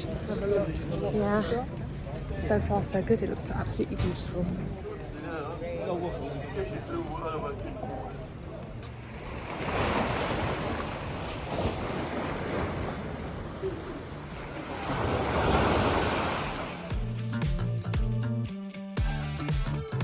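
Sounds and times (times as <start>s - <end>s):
background music: 0.0s - 9.8s, 13.9s - 20.0s
sea waves washing onto shore: 8.8s - 17.1s.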